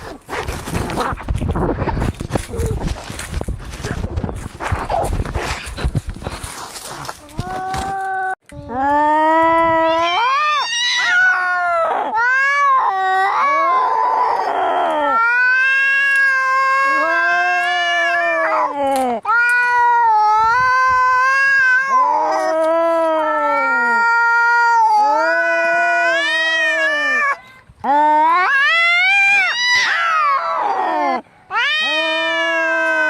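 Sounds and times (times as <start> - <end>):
cats yowling: 9.7 - 33.0.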